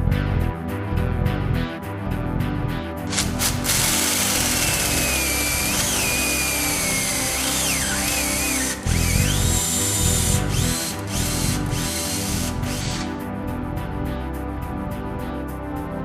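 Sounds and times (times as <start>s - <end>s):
background music: 0.0s - 16.0s
electric drill whining: 3.1s - 13.1s.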